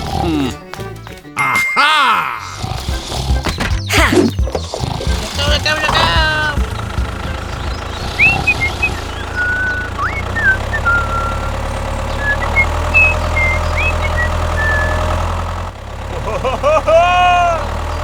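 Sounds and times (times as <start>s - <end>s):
tractor engine idling: 2.6s - 18.0s
short high whistles: 8.2s - 11.5s, 12.2s - 15.0s.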